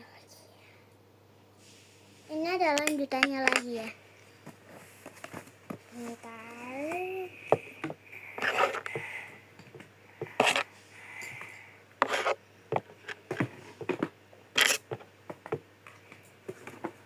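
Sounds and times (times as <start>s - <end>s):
small objects scraping: 8.4s - 9.0s, 10.4s - 10.8s, 12.0s - 12.4s, 14.6s - 14.9s.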